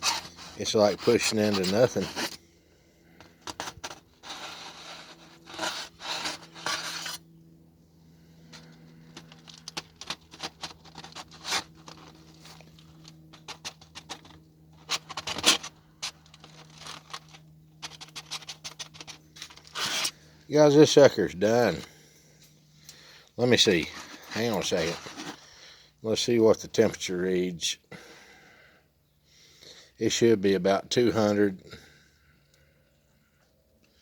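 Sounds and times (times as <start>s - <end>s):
scraping and rubbing handling: 0.0s - 2.4s, 3.1s - 7.3s, 8.4s - 20.3s, 23.4s - 25.7s.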